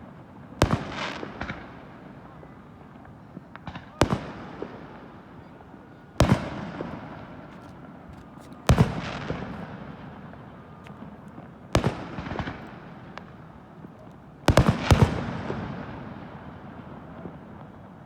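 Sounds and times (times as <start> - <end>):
small firework pops: 0.6 - 2.0, 3.0 - 5.6, 6.2 - 15.6
loud firework bangs: 6.2 - 13.5, 14.4 - 17.4.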